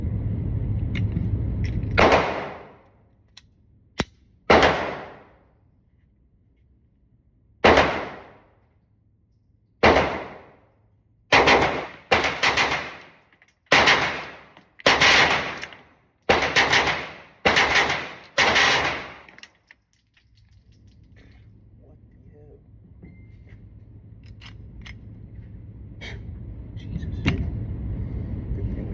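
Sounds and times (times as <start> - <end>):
pistol shots with echo: 2.0 - 2.8, 4.5 - 5.4, 7.6 - 8.5, 9.8 - 10.6, 11.3 - 13.1, 13.7 - 15.7, 16.3 - 19.3.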